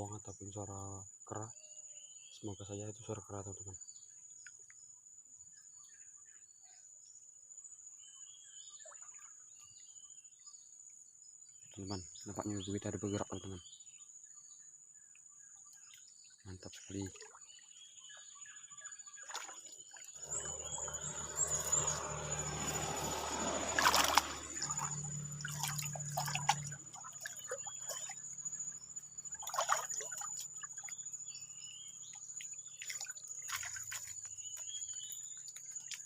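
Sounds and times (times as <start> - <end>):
water splashing and trickling: 15.8 - 17.9, 19.1 - 36.0
high-pitched insect drone: 20.2 - 31.7.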